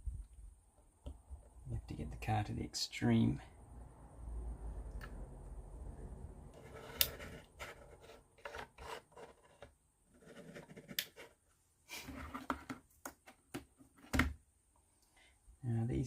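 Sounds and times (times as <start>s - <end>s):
plywood parts rubbing and knocking: 6.6s - 14.3s.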